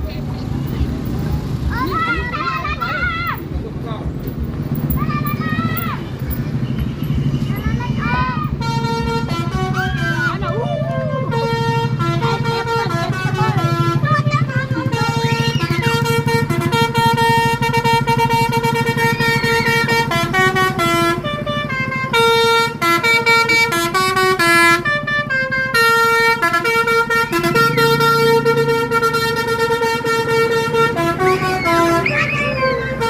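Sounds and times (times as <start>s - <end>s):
bus air horns playing a tune: 6.5s - 33.0s.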